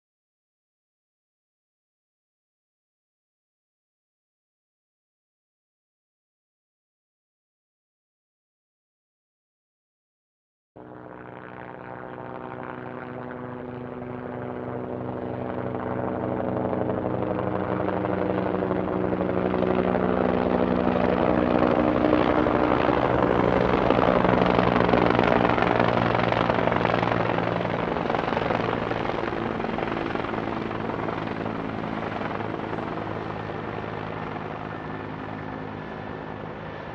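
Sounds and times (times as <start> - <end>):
helicopter passing: 10.8 - 36.9.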